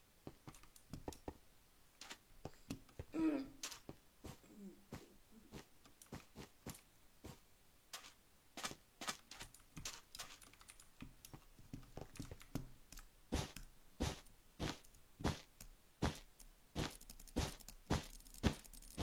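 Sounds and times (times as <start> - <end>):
sharp clicks and taps: 0.2 - 1.4, 7.9 - 19.0.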